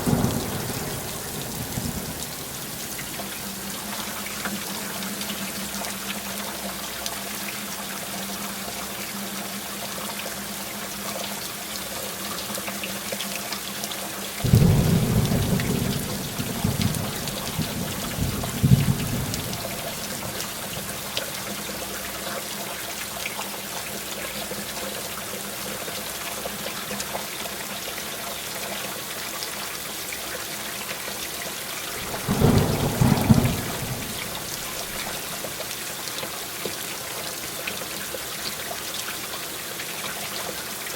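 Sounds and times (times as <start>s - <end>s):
thunder rolling: 0.0s - 2.6s, 32.0s - 35.1s
heavy rain falling: 0.0s - 40.9s.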